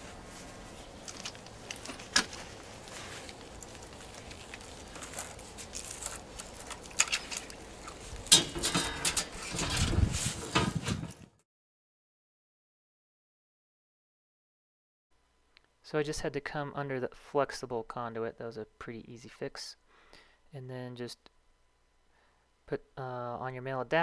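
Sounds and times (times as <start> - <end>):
rustling: 0.0 - 11.2.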